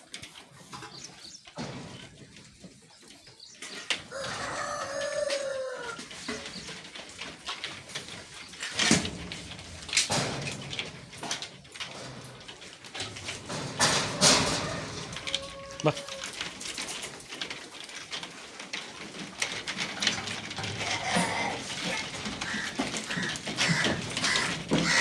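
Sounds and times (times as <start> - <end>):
rooster crowing: 4.1 - 6.0, 14.1 - 16.4.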